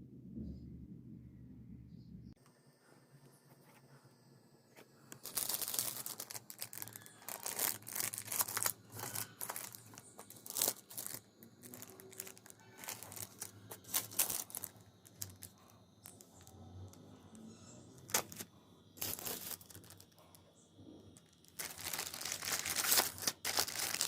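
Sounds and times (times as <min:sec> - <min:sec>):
packaging being torn and crinkled: 0:05.1 - 0:16.3, 0:18.0 - 0:20.2, 0:21.2 - 0:24.0.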